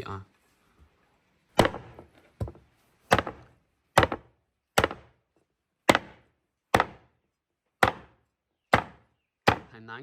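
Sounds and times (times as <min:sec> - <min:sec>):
knife chopping through bone: 0:03.1 - 0:05.1, 0:05.9 - 0:06.2, 0:06.8 - 0:07.1, 0:07.8 - 0:09.7.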